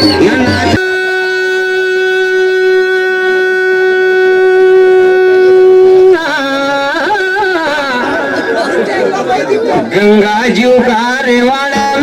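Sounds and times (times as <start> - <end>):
long held musical note: 0.0 - 6.3.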